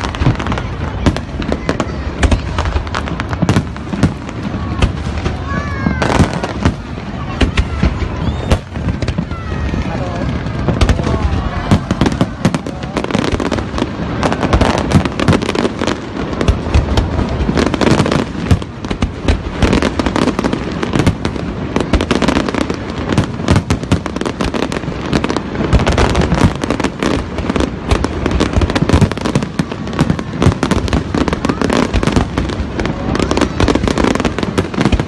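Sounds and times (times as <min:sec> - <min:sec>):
fireworks bursts and crackling: 0:00.0 - 0:35.0.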